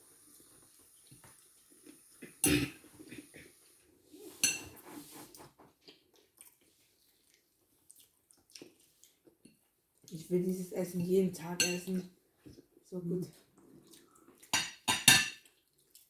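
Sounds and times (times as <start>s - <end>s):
cutlery clatters: 4.4s - 4.8s, 14.5s - 15.4s
cutlery clinking on plates: 4.4s - 4.8s, 14.5s - 15.5s.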